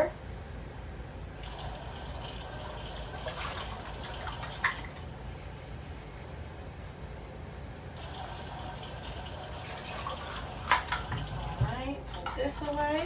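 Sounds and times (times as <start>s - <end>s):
tap water running: 1.2s - 5.3s, 7.9s - 13.0s.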